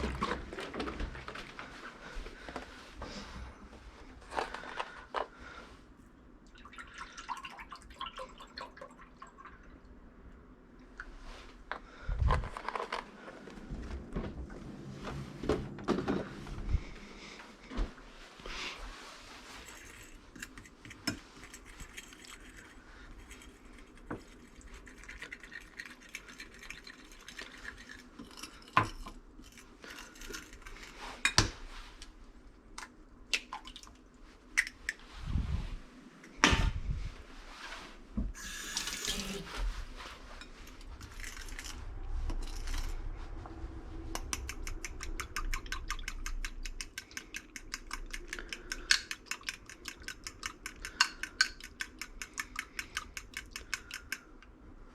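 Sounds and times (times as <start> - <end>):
tap water running: 38.3 - 39.6.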